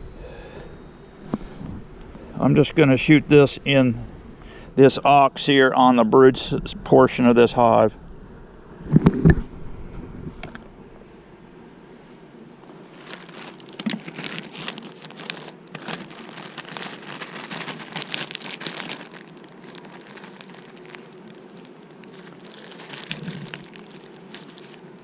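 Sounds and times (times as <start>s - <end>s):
honeybees buzzing: 0.0s - 25.0s
crackling rustling handling noises: 12.0s - 25.0s.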